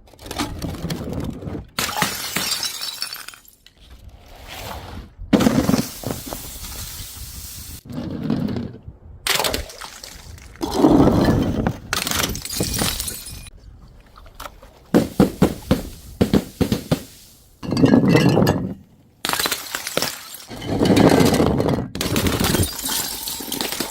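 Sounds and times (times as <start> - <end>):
glass bottles smashing: 1.8 - 3.8, 12.0 - 13.5, 15.0 - 23.9
glass shards clinking: 12.3 - 13.5, 22.4 - 23.9.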